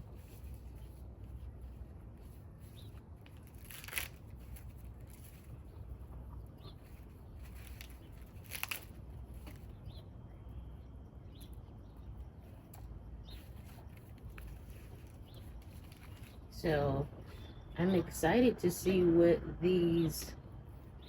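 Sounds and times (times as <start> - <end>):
corn husks ripping: 0.0 - 9.8, 12.6 - 16.5
corn husks rustling: 0.0 - 9.8, 12.5 - 17.1.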